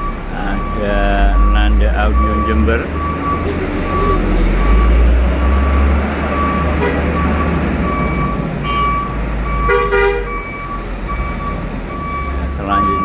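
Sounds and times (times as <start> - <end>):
reversing beeper: 0.0 - 13.0
truck engine rumble: 0.0 - 13.0
truck horn toot: 6.4 - 7.6, 8.6 - 10.6.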